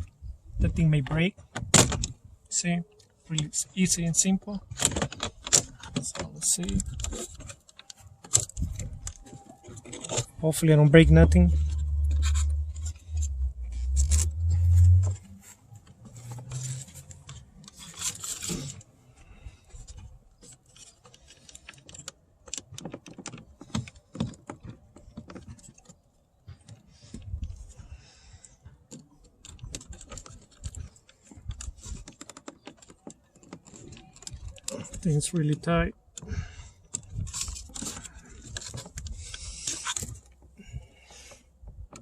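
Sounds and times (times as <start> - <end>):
plastic trim scraping: 4.7 - 18.9
loud low rumble: 10.8 - 15.4.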